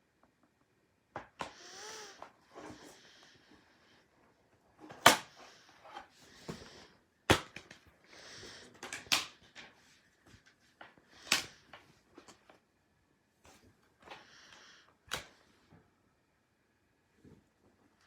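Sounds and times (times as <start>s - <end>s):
plastic case clicks and snaps: 8.8s - 9.4s.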